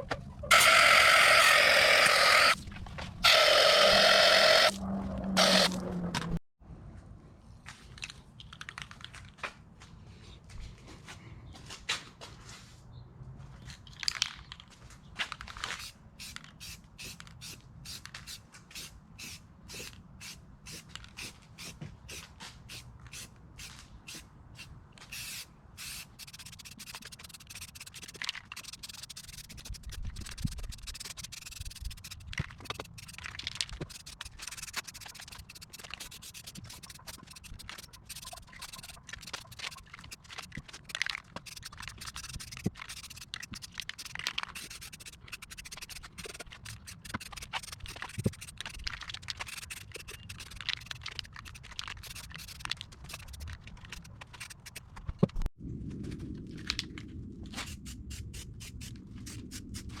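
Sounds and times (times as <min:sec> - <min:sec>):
hand sanding metal: 0:26.0 - 0:54.8
scattered clicks: 0:26.0 - 0:55.4.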